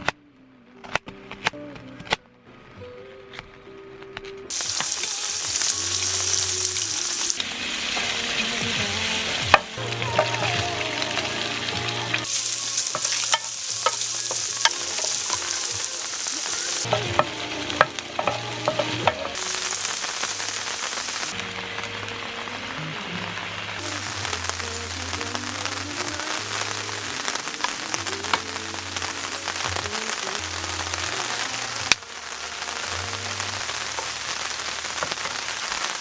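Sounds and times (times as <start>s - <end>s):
utensil stirring against pan: 4.5s - 7.4s, 12.2s - 21.3s
food sizzling in a pan: 4.5s - 36.0s.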